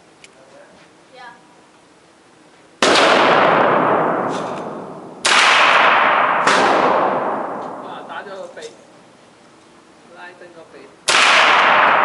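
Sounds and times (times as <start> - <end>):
gunshots echoing indoors: 2.8 - 8.2, 11.1 - 12.0.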